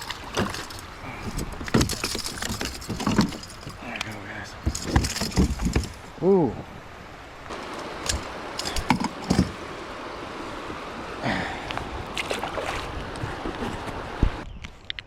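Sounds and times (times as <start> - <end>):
knocks and splashes against hull: 0.0 - 3.8, 4.6 - 6.1
river water rushing: 0.0 - 14.4.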